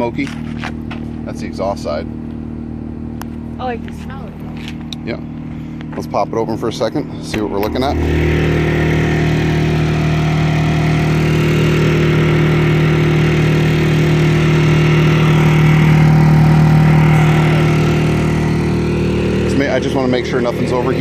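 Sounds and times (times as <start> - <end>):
generator engine running: 0.0 - 21.0.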